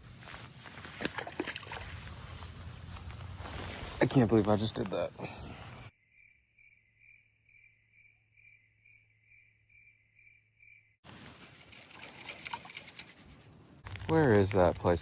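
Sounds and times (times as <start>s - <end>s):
cricket chirping: 5.2s - 13.0s.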